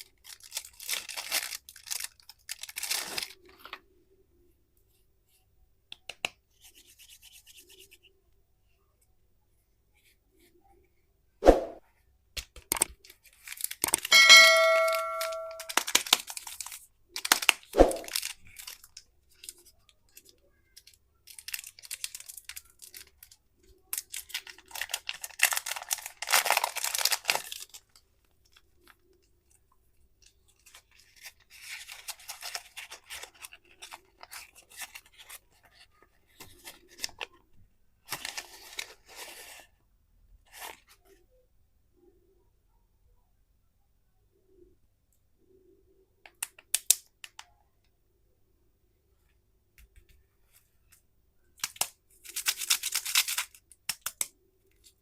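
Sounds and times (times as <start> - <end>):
candy wrappers crinkling: 0.0 - 3.8, 12.7 - 14.2, 15.5 - 29.6, 30.2 - 37.4, 38.0 - 39.7, 51.6 - 55.0
short ringing ding: 14.1 - 15.7.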